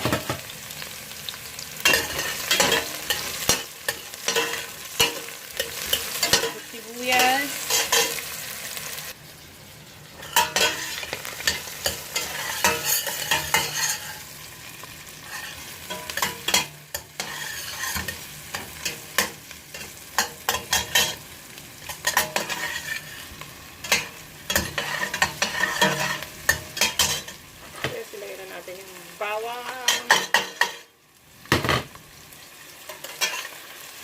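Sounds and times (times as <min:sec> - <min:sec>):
onions sizzling in oil: 0:00.0 - 0:34.0
utensil scraping and knocking pan: 0:10.2 - 0:14.2, 0:15.2 - 0:21.2, 0:23.9 - 0:28.0.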